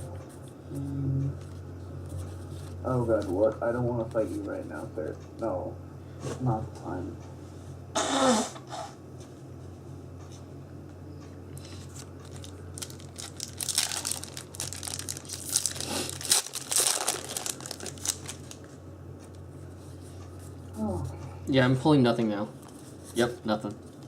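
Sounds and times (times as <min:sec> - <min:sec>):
low steady hum: 0:00.0 - 0:24.0
foil wrappers crinkling and tearing: 0:11.6 - 0:18.8.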